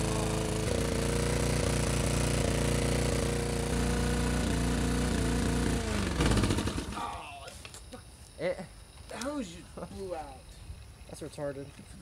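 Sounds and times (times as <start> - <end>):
lawnmower engine at full throttle: 0.0 - 7.0.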